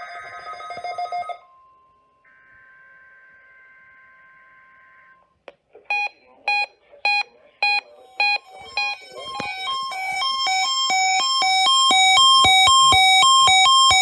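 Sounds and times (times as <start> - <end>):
alternating two-tone alarm: 5.9 - 14.0
sharp alarm beeps: 5.9 - 14.0
steady warning alarm tone: 5.9 - 14.0.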